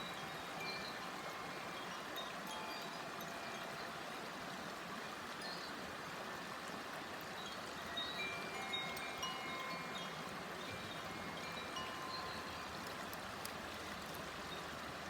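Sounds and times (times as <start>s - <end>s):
babbling river: 0.0s - 15.0s
wind chime ringing: 0.2s - 3.7s, 7.4s - 12.9s.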